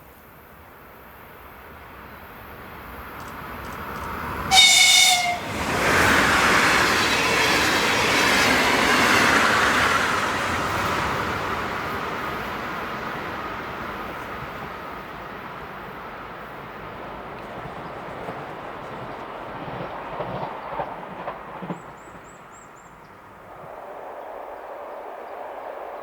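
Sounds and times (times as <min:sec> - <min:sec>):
train wheel and rail noise: 0:00.0 - 0:26.0
electric train passing: 0:00.4 - 0:26.0
train horn blast: 0:04.5 - 0:06.2.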